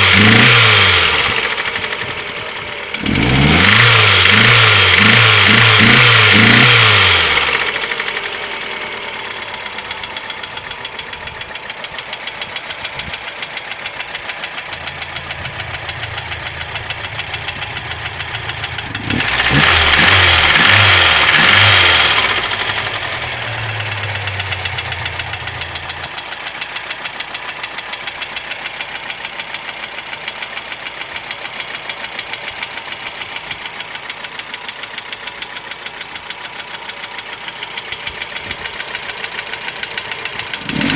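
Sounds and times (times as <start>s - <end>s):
car engine idling with knock: 0.0s - 40.9s.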